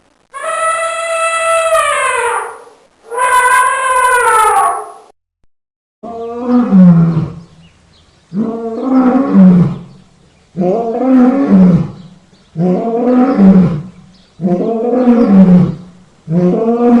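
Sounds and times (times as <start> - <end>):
animal call: 0.3 - 5.1
large animal roaring: 6.0 - 7.5, 8.4 - 9.9, 10.6 - 12.0, 12.6 - 17.0.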